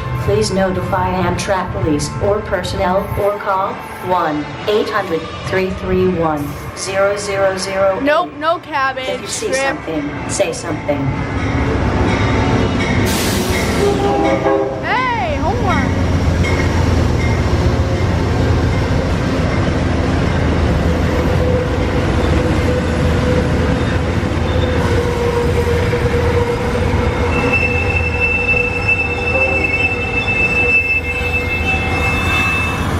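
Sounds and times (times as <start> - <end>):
train rumbling: 0.0 - 32.9
high loud wheel squeal: 23.8 - 32.9.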